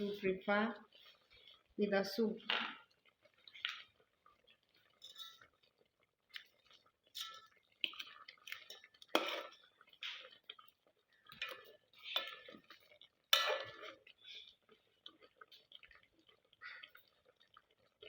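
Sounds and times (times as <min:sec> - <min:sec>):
utensils and dishes clinking: 0:05.0 - 0:05.4.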